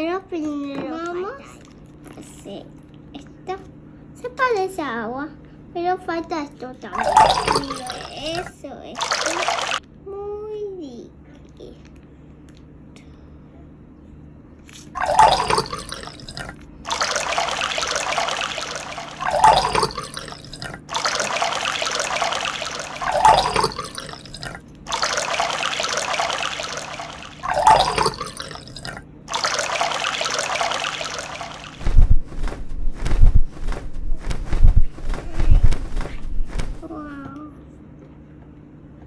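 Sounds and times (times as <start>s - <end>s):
water pouring: 7.0s - 9.8s, 15.0s - 37.1s
water splash: 7.0s - 9.8s, 15.0s - 37.1s.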